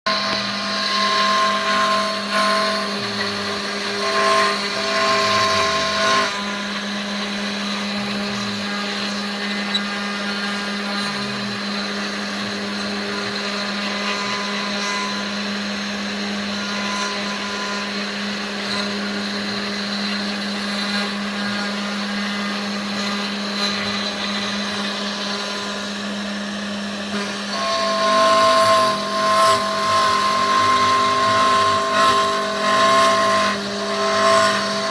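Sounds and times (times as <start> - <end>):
router spindle whine: 0.1 - 34.9.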